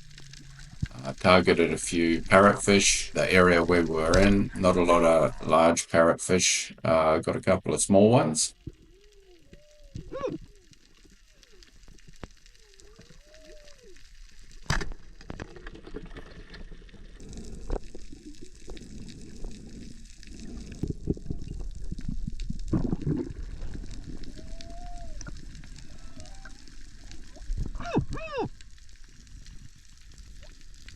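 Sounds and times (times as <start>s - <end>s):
crackling and clicking: 0.0s - 5.6s, 8.5s - 30.9s
underwater gurgling and bubbling: 0.0s - 5.7s, 8.5s - 30.9s.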